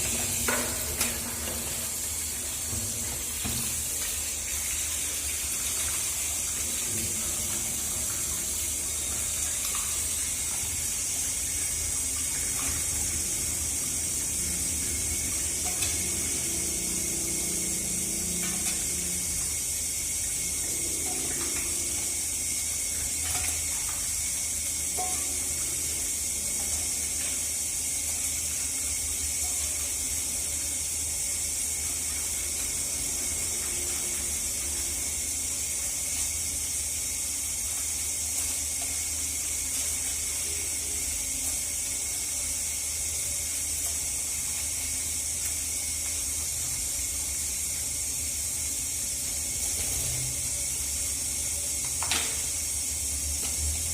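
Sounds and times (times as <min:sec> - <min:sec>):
steady low hum: 0:00.0 - 0:42.6
water running from a tap: 0:00.0 - 0:53.9.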